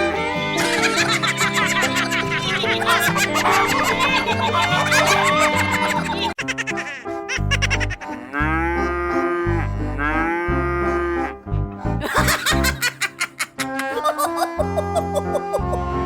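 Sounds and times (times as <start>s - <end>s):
background music with bass: 7.7s - 12.8s.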